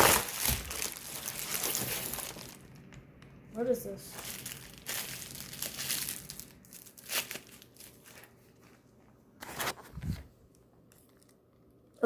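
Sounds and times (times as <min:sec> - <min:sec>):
packaging crinkling and rustling: 0:00.0 - 0:03.0, 0:04.0 - 0:11.7.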